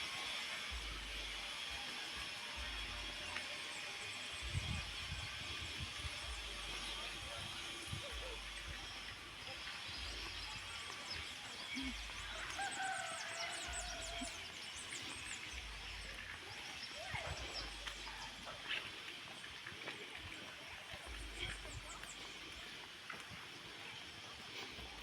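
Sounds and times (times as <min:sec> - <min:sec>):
small birds chirping: 0:02.2 - 0:25.0
wind rumbling on microphone: 0:04.4 - 0:10.8, 0:11.8 - 0:23.7
rooster crowing: 0:12.2 - 0:14.5.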